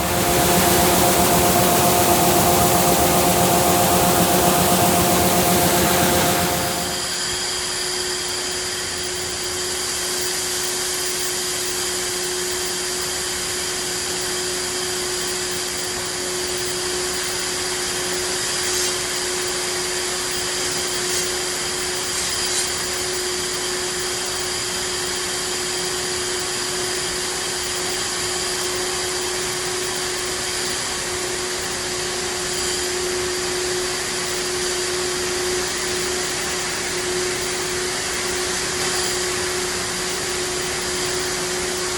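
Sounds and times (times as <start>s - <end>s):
running machinery drone: 0.0s - 7.7s.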